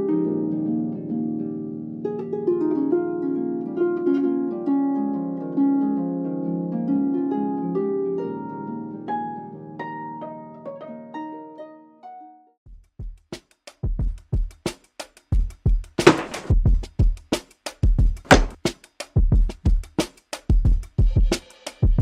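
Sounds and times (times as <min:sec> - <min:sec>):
plucked harp melody: 0:00.0 - 0:01.5.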